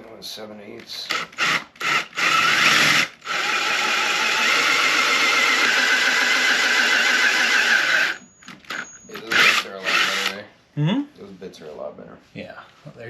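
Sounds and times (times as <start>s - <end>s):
power drill drilling into metal: 1.1s - 10.4s.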